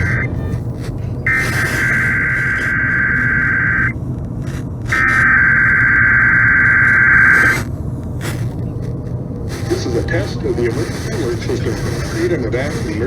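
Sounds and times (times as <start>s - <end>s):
buzzy digital data warble: 0.0s - 4.0s, 4.9s - 7.7s, 9.5s - 13.0s.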